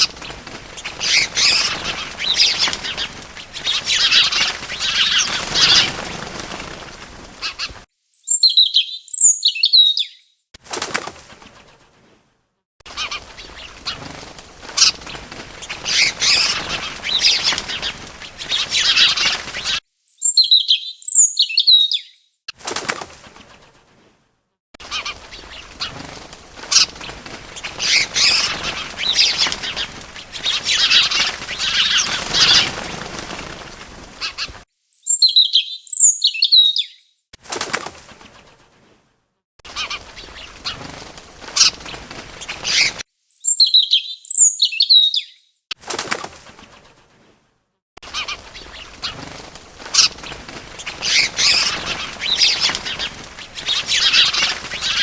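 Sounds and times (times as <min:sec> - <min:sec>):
bird wings flapping: 0:00.0 - 0:07.9, 0:10.6 - 0:12.3, 0:12.9 - 0:19.8, 0:22.5 - 0:24.2, 0:24.8 - 0:34.6, 0:37.4 - 0:39.1, 0:39.7 - 0:43.0, 0:45.7 - 0:55.0
high bird chirps: 0:07.5 - 0:10.4, 0:18.4 - 0:22.3, 0:34.3 - 0:37.1, 0:42.7 - 0:45.5.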